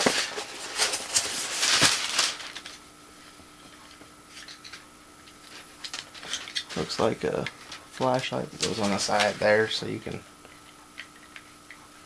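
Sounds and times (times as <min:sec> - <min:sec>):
plastic packaging crinkling: 0:00.0 - 0:02.8, 0:05.8 - 0:09.8.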